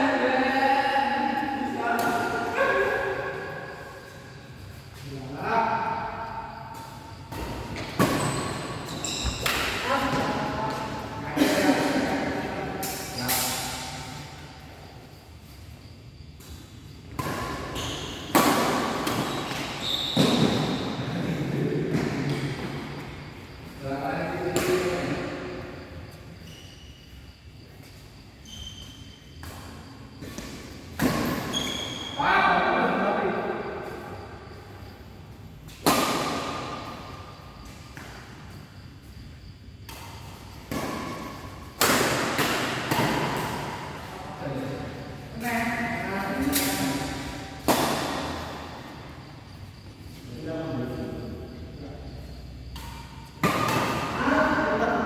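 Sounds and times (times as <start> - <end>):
racket hitting shuttlecock: 7.3 - 10.9, 17.1 - 20.9, 35.7 - 37.0, 39.9 - 44.1, 46.5 - 49.0, 52.7 - 54.4.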